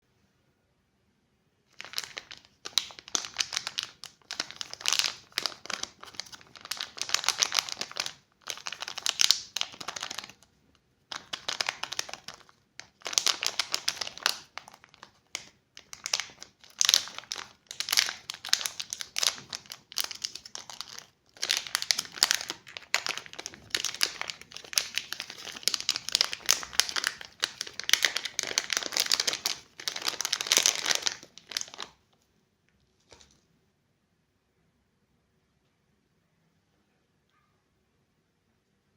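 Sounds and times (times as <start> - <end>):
candy wrappers crinkling: 1.7 - 10.5, 11.1 - 32.2.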